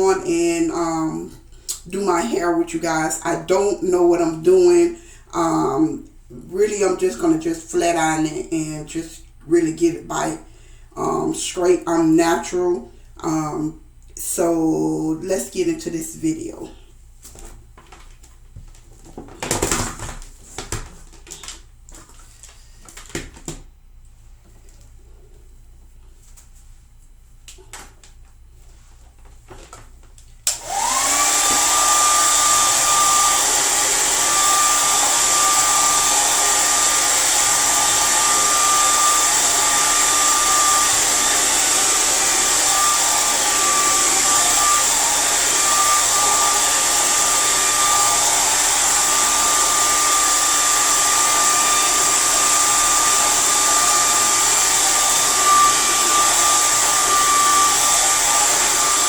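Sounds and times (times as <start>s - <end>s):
hair dryer whining: 0.0s - 9.0s, 30.4s - 59.0s.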